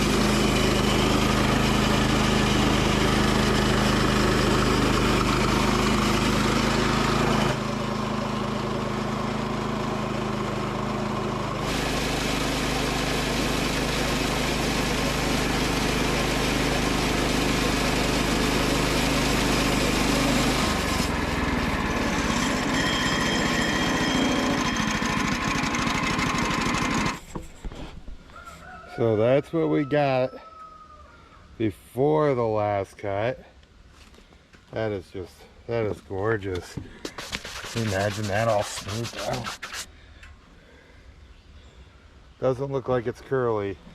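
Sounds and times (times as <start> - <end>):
sawmill engine running: 0.0 - 27.5, 35.3 - 39.9
band blade cutting log: 18.6 - 28.0, 36.5 - 39.9.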